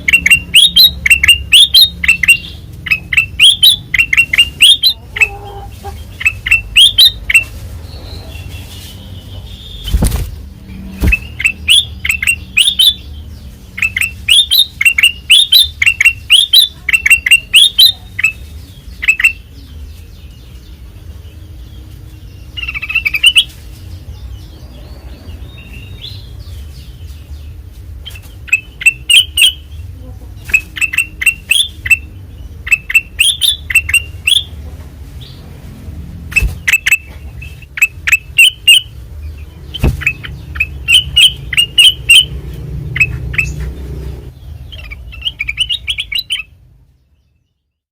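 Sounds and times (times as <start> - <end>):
bulbul singing: 0.0 - 35.5, 36.1 - 47.8
thump: 39.8 - 40.0.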